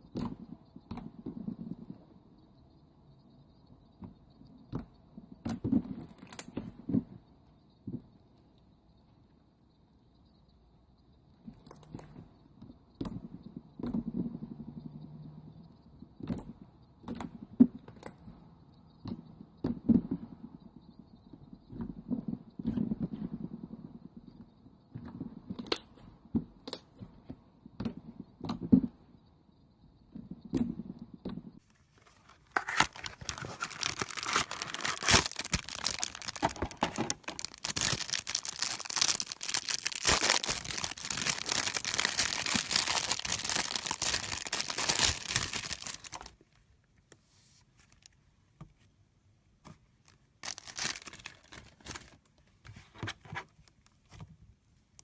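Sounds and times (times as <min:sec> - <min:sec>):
slime squelching and crackling: 0:32.0 - 0:46.4, 0:50.1 - 0:52.2.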